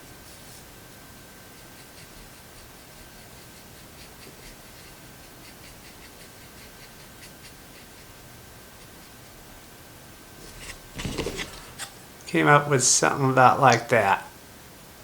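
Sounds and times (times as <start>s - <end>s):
paintbrush scratchy ticks and dabs: 1.5s - 9.5s
steady hiss: 11.2s - 15.0s.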